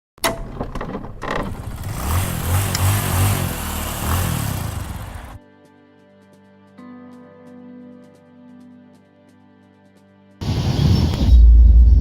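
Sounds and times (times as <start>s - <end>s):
road and traffic noise: 0.3s - 5.4s
vehicle engine rumbling: 0.4s - 5.4s.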